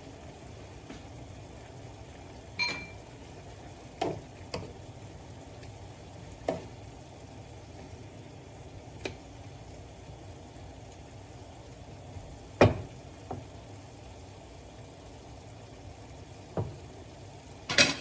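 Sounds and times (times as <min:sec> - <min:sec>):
broth simmering bubbling: 0:00.0 - 0:18.0.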